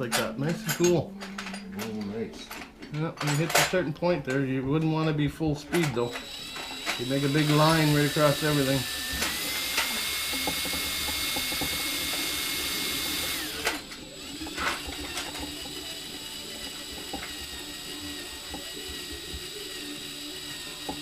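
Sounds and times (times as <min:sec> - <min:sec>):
electric drill whining: 0:05.8 - 0:21.0.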